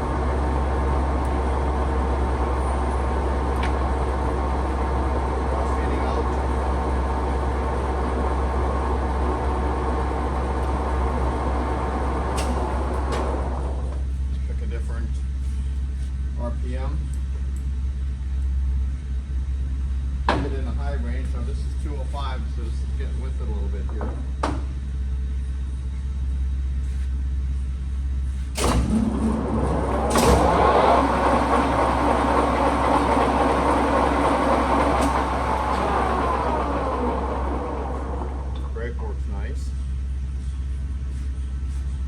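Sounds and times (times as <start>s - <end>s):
louder noisy lathe running: 0.0s - 13.8s, 28.6s - 39.3s
lathe running hum: 0.0s - 14.1s, 28.6s - 41.7s
lathe click: 28.6s - 38.7s.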